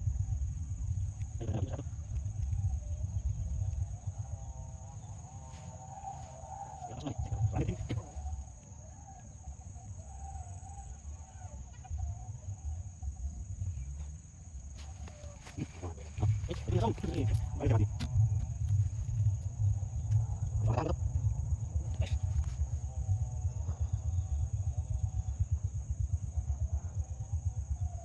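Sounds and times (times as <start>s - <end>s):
low rumble: 0.0s - 8.7s, 11.7s - 28.0s
insect whine: 0.0s - 28.0s
chicken calling: 14.8s - 17.5s.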